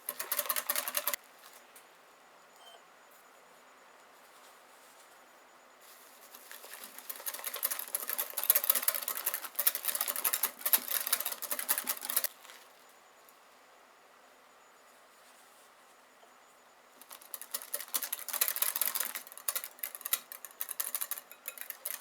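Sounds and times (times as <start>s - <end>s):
whisk beating in bowl: 0.0s - 1.2s, 6.4s - 12.3s, 17.0s - 22.0s.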